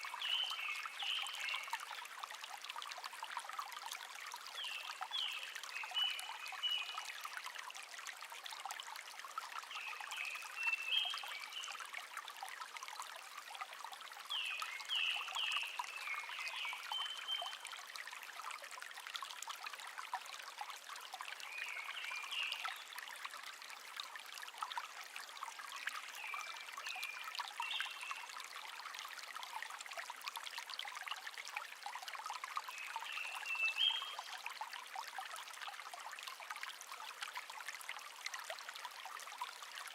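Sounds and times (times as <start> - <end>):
stream babbling: 0.0 - 39.9
songbird singing: 32.8 - 34.3.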